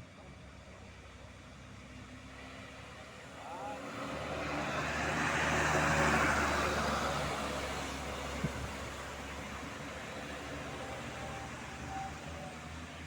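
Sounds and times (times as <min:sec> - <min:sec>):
vehicle driving past: 0:02.1 - 0:13.0.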